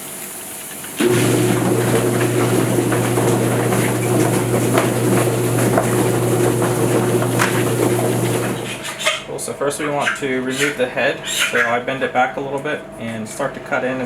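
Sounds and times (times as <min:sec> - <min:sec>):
electric motor humming: 0:01.0 - 0:08.8.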